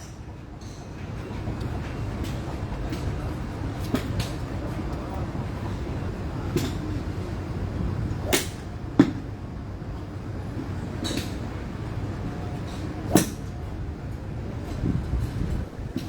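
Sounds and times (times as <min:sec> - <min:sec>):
steady background noise: 0:00.0 - 0:16.0
golf clubs striking balls: 0:08.2 - 0:09.3, 0:11.0 - 0:11.4, 0:13.1 - 0:13.5.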